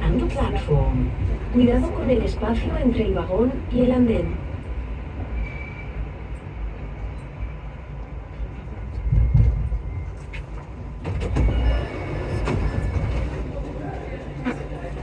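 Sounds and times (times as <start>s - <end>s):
metro train low rumble: 0.0s - 15.0s.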